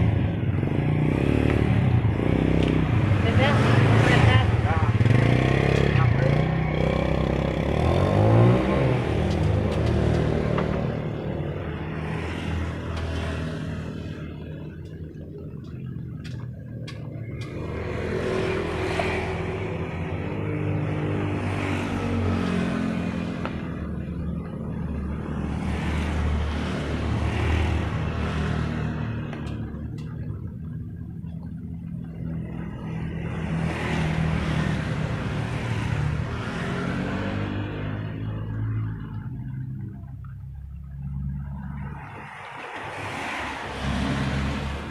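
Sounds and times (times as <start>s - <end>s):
vehicle engine passing by: 0.0s - 14.3s, 40.8s - 44.9s
passing road noise: 0.0s - 44.9s
vehicle engine humming: 0.0s - 44.9s.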